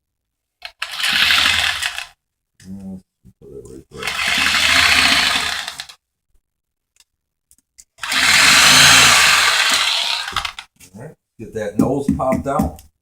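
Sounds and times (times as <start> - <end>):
reciprocating saw cutting: 0.7 - 2.1, 4.0 - 6.0, 8.0 - 10.6.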